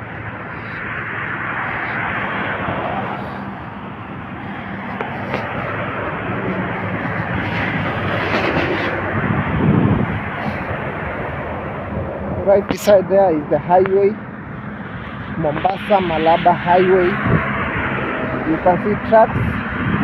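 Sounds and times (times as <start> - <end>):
highway traffic engine drone: 0.0 - 20.0
vehicle passing close: 0.0 - 20.0
tyre noise: 4.8 - 9.4.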